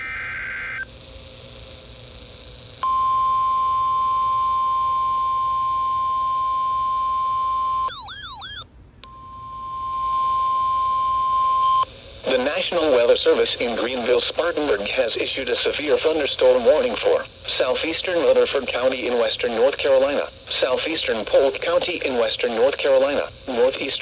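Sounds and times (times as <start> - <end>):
steady warning alarm tone: 0.0 - 0.9, 2.8 - 13.0.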